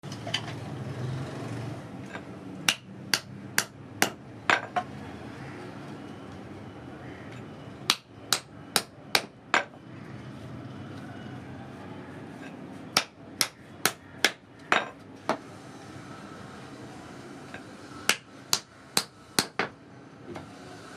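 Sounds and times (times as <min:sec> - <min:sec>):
hammer striking nails into wood: 0:07.9 - 0:09.7, 0:18.1 - 0:19.7.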